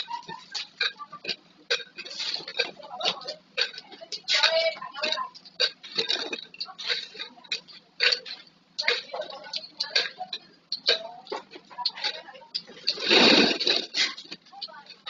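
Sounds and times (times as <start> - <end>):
plastic bottle clatter: 12.6 - 14.4.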